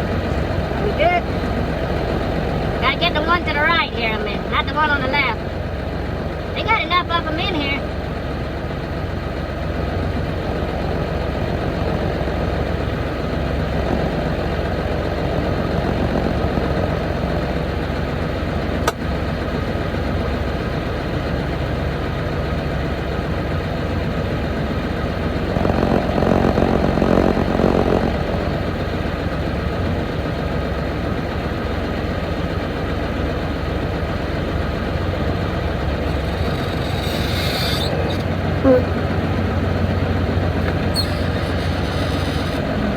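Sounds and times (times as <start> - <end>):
diesel truck engine running: 0.0 - 42.9
sharp click: 18.8 - 19.0.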